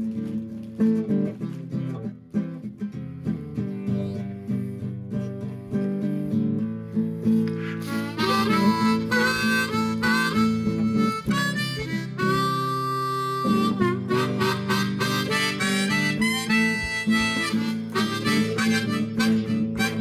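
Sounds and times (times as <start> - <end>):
acoustic guitar strumming: 0.0 - 20.0
harmonica melody: 7.3 - 20.0.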